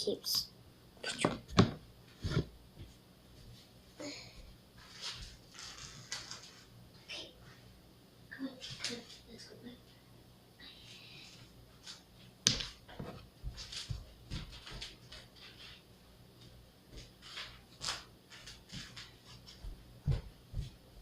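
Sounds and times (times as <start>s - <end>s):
rustling: 4.8s - 6.7s.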